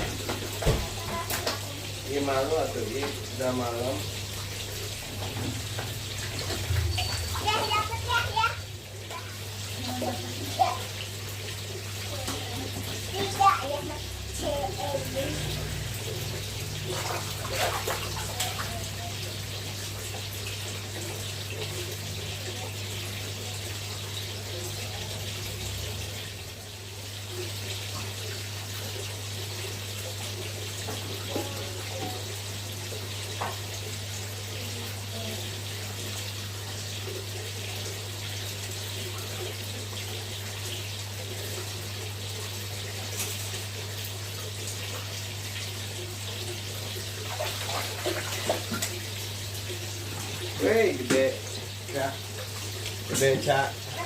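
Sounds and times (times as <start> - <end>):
water pouring into pond: 14.0 - 30.7, 34.5 - 54.0.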